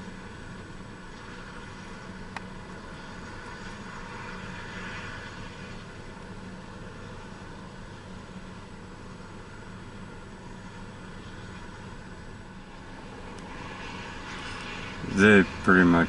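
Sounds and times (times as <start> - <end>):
helicopter idling: 0.0 - 13.6, 14.5 - 16.0.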